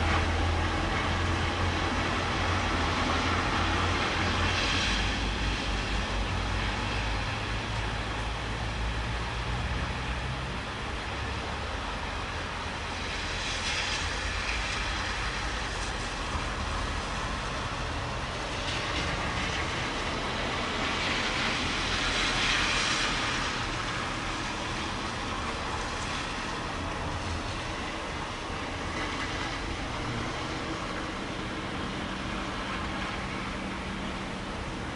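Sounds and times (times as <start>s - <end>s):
steady rain hiss: 0.0s - 34.9s.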